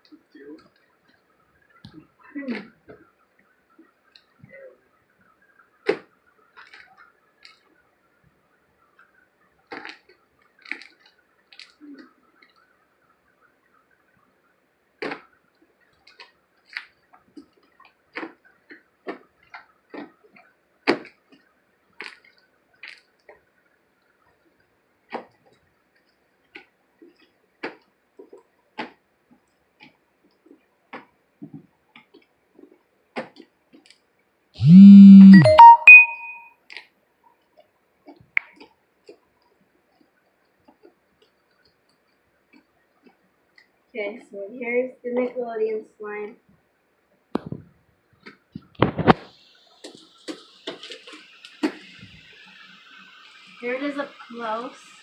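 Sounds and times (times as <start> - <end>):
brief tones: 34.6 - 36.5.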